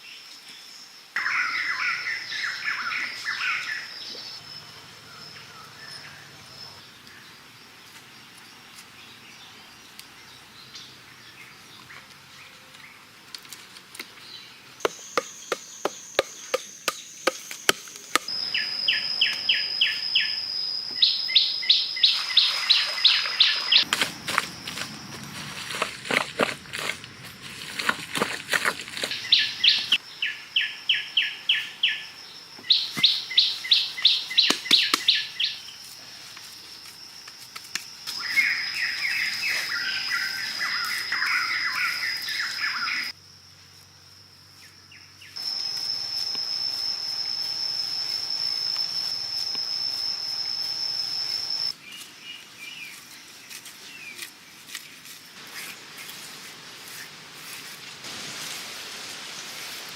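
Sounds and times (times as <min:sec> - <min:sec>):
high-pitched insect buzz: 0:01.2 - 0:06.9, 0:14.8 - 0:51.8
birds chirping: 0:01.2 - 0:13.1, 0:14.1 - 0:35.9, 0:37.9 - 0:43.1.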